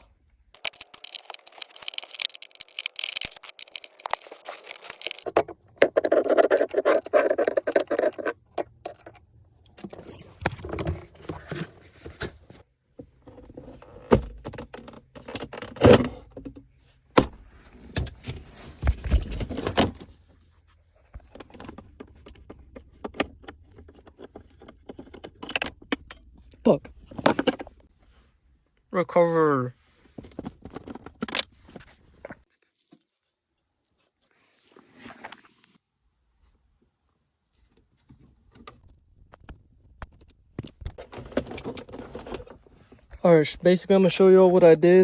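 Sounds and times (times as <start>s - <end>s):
plastic trim clicking and rattling: 0.6s - 9.8s.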